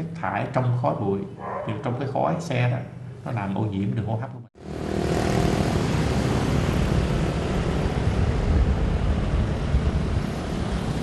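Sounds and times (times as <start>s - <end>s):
city street traffic rumble: 4.6s - 11.0s.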